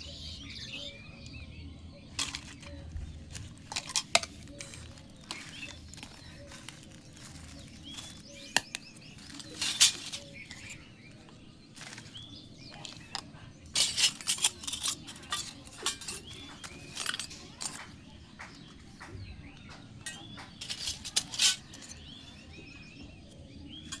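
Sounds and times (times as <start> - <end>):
plastic toy pieces clicking: 2.1 - 10.8, 12.8 - 18.0, 20.6 - 22.0.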